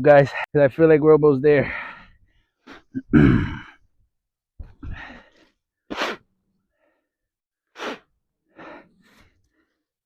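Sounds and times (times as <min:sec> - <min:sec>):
person huffing sharp breaths: 0:01.7 - 0:03.8, 0:04.6 - 0:07.1, 0:07.7 - 0:09.8
person sighing: 0:03.0 - 0:03.8.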